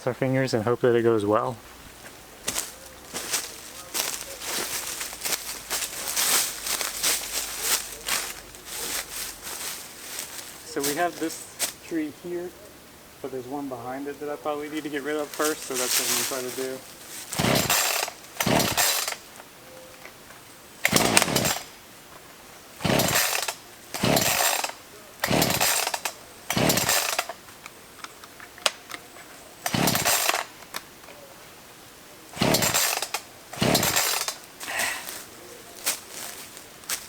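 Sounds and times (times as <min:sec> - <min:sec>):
chainsaw starter cord pulls: 0:15.2 - 0:19.3, 0:20.8 - 0:21.8, 0:22.8 - 0:29.0, 0:29.6 - 0:31.1, 0:32.4 - 0:35.3.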